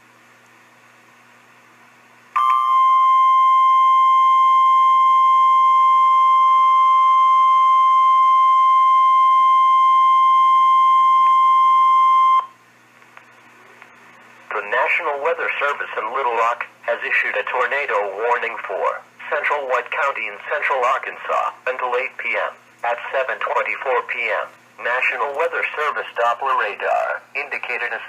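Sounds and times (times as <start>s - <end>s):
steady pure warning tone: 0.8s - 12.7s.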